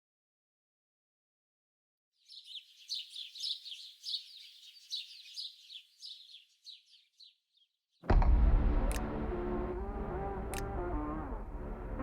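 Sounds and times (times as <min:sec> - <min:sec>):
faint birds chirping: 0:02.2 - 0:08.1.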